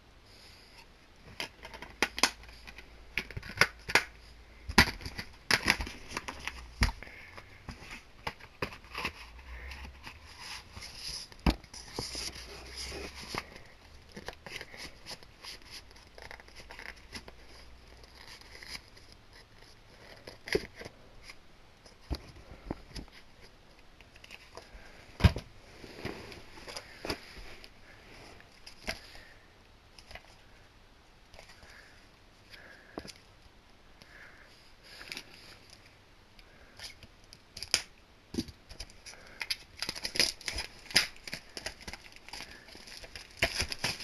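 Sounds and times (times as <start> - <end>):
packaging crinkling and scraping: 1.3 - 21.4, 36.6 - 44.0.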